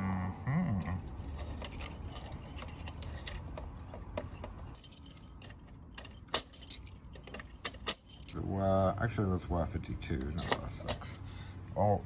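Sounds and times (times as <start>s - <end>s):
padlocks and keys clinking: 0.8s - 8.4s, 10.4s - 11.3s.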